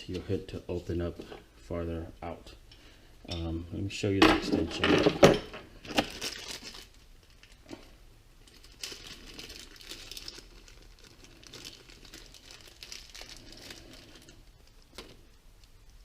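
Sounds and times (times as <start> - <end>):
plastic packaging crinkling: 5.8 - 16.0.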